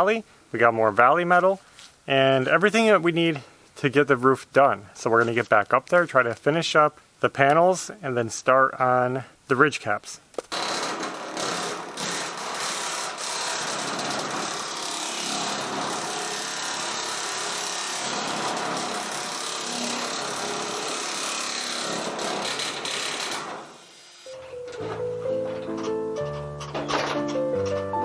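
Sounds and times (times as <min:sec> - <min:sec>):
power tool working on metal: 0:10.5 - 0:24.4.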